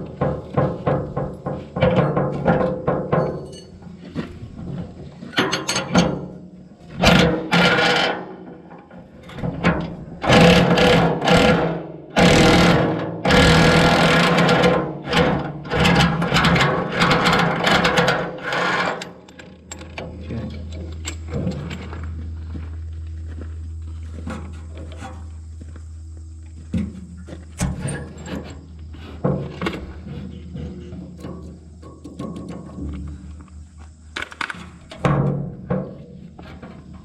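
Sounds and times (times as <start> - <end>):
clicks and metal knocks: 0.0 - 6.4, 14.2 - 25.4
power tool running in bursts: 10.3 - 14.7.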